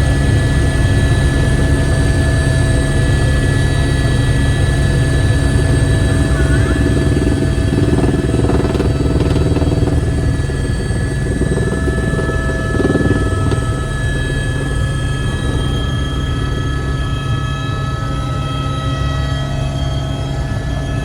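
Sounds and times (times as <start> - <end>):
helicopter engine whine: 0.0 - 21.0
helicopter rotor thudding: 3.6 - 17.6.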